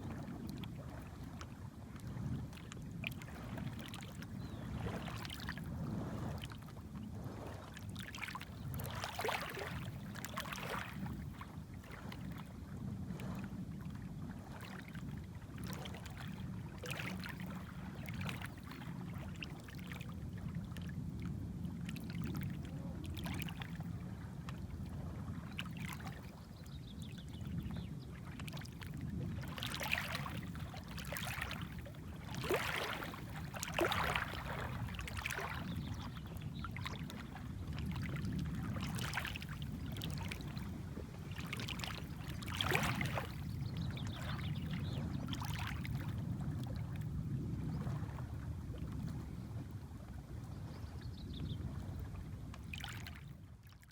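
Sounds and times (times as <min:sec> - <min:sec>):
small waves lapping at shore: 0:00.0 - 0:53.9
short water splashes: 0:02.0 - 0:06.7, 0:07.4 - 0:12.5, 0:14.5 - 0:20.2, 0:21.9 - 0:23.9, 0:28.2 - 0:47.0, 0:52.7 - 0:53.3.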